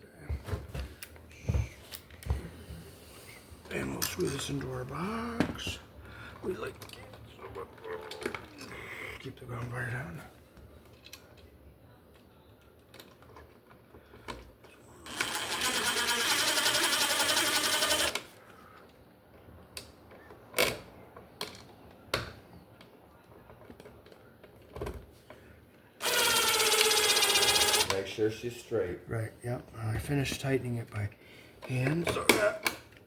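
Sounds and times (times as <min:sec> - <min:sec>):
drill driver motor running: 0:15.0 - 0:18.2, 0:26.0 - 0:28.0.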